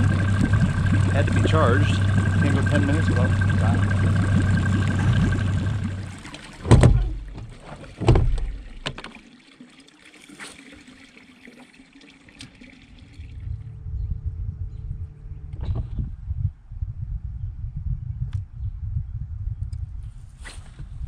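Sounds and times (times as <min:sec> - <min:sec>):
boat motor humming: 0:00.0 - 0:09.1, 0:12.5 - 0:15.6
heavy thumps against boat: 0:06.6 - 0:09.0.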